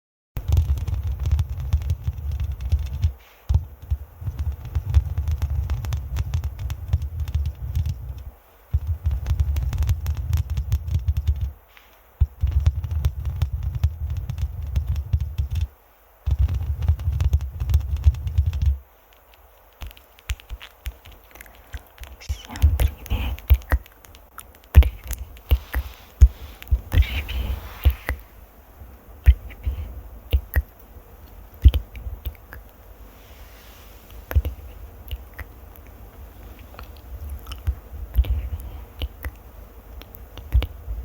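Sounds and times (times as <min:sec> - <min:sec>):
microphone being scratched and rubbed: 0:00.4 - 0:15.7, 0:16.3 - 0:18.8, 0:22.0 - 0:23.8, 0:24.8 - 0:28.4.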